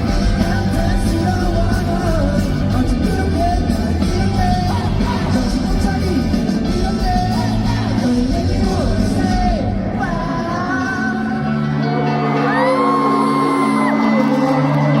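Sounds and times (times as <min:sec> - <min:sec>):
pop-rock band with singing: 0:00.0 - 0:15.0
crowd whooping and yelling: 0:04.2 - 0:15.0.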